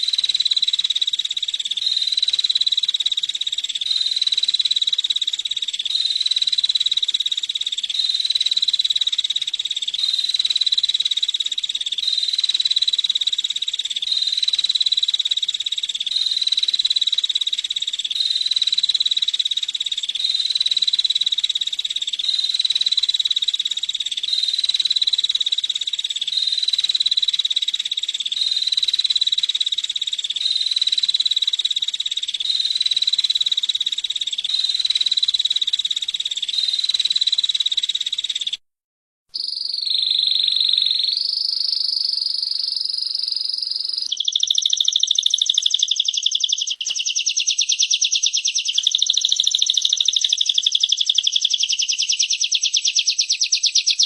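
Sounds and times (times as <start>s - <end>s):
bird buzzing trill: 39.4s - 54.0s.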